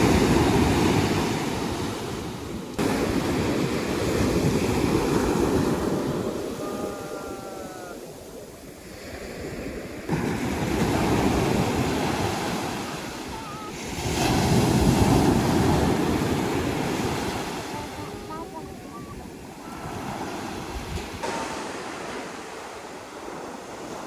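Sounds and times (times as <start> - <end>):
sea waves washing onto beach: 0.0 - 24.0.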